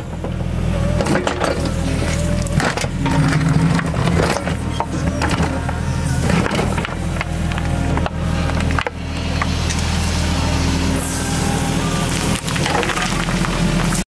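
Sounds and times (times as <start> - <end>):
excavator engine running: 0.0 - 14.0
bucket scraping rocky ground: 1.0 - 10.2, 12.0 - 14.0.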